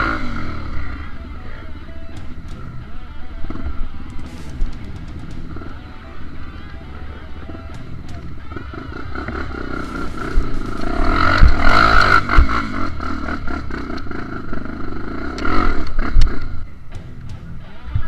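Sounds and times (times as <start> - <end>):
motorcycle engine revving: 0.0 - 18.0
knocks and clatter: 4.1 - 5.8.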